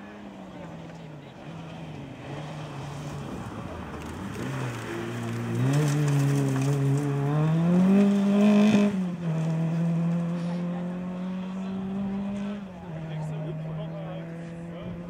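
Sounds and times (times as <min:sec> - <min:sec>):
rally car engine revving: 0:00.0 - 0:15.0.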